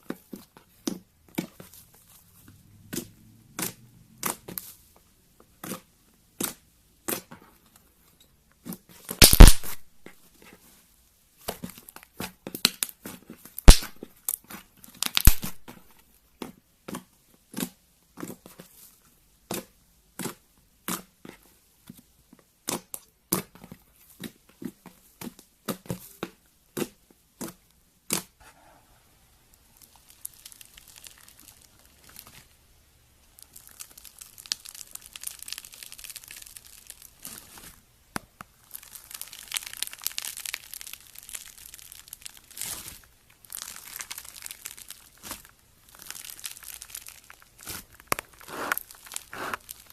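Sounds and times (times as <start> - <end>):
slime squishing with sticky pops: 0.0 - 4.8, 5.4 - 7.5, 8.6 - 10.2, 11.4 - 15.8, 29.5 - 32.6, 33.2 - 49.9.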